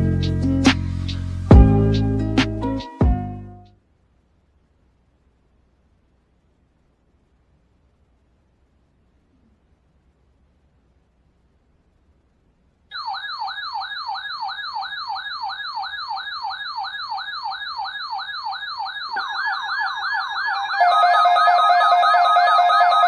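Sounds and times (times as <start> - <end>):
electronic siren yelping: 12.9 - 23.0
second siren with alarm tones: 12.9 - 23.0.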